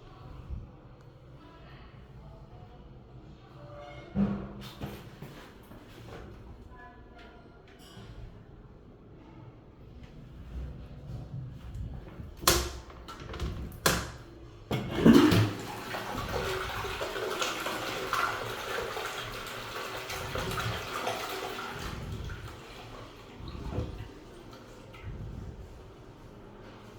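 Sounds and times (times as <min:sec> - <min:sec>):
toilet flush button clicks: 0:12.4 - 0:15.6
toilet water rushing: 0:12.4 - 0:25.9.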